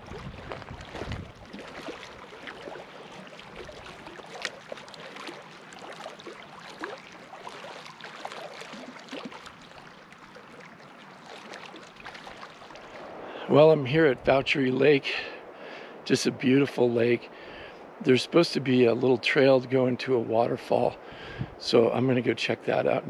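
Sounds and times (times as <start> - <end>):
small water splashes and gurgles: 0.0 - 13.4
lake water lapping at shore: 0.0 - 14.2.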